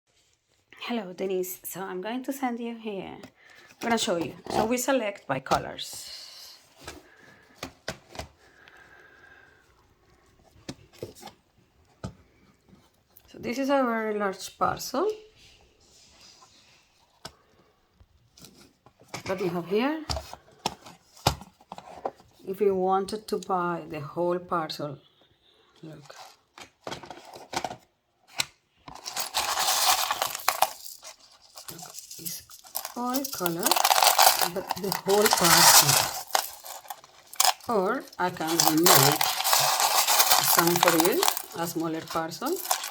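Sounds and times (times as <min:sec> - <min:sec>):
stones clicking and knocking: 0:28.9 - 0:42.9.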